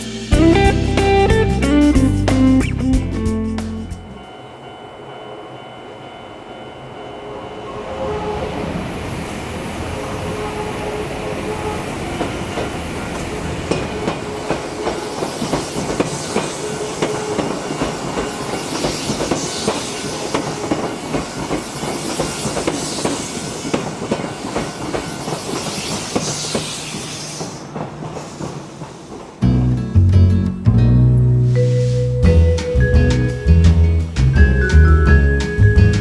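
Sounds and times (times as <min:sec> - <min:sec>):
train wheels clacking over rail joints: 0:12.2 - 0:29.4.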